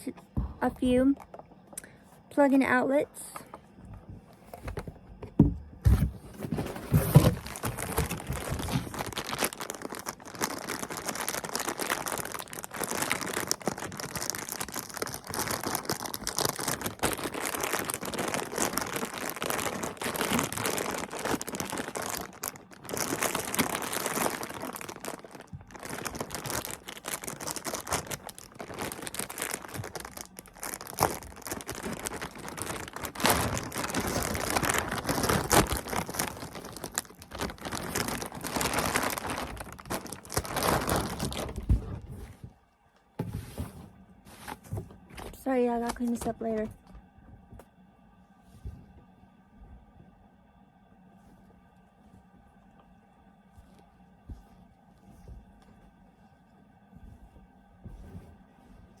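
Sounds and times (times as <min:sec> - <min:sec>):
packaging crinkling: 0:05.9 - 0:42.4, 0:53.5 - 0:59.0.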